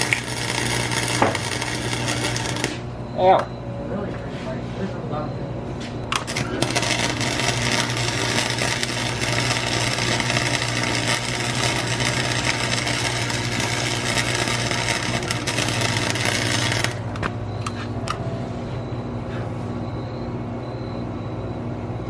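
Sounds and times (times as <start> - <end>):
arc welding crackle: 0.0 - 3.0, 6.0 - 18.2
steady low hum: 0.0 - 22.0.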